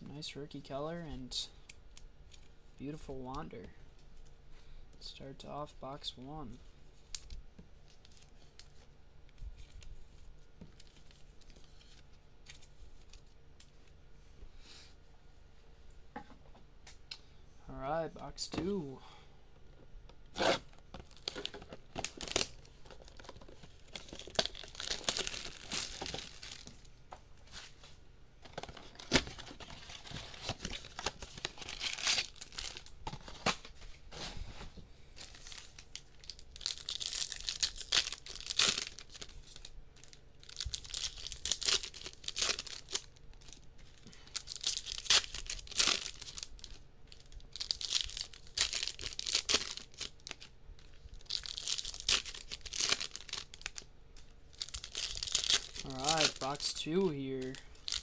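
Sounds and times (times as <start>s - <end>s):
card packs tearing and crinkling: 20.3s - 26.7s, 28.4s - 34.4s, 35.2s - 58.0s.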